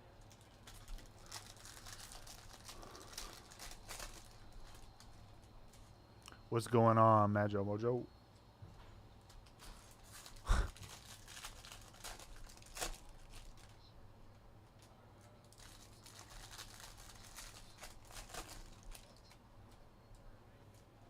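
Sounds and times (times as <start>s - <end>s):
plastic packaging crinkling and tearing: 0.2s - 5.9s, 9.2s - 13.9s, 14.7s - 19.8s.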